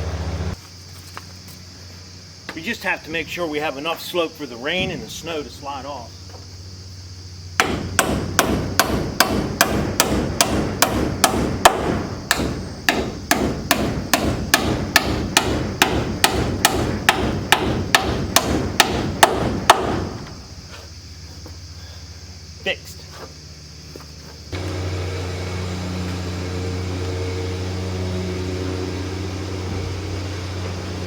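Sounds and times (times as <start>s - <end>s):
hammer striking nails into wood: 7.6s - 20.4s.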